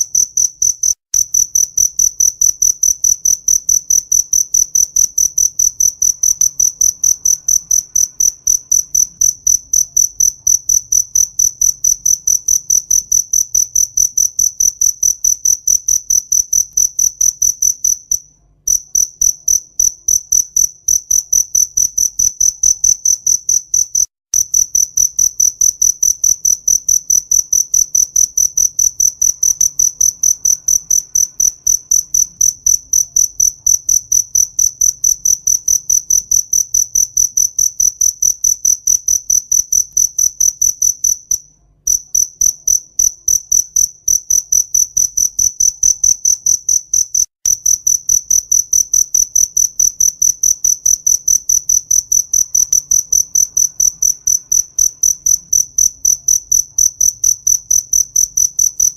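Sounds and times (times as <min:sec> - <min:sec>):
cricket chirping: 0:00.0 - 0:58.9.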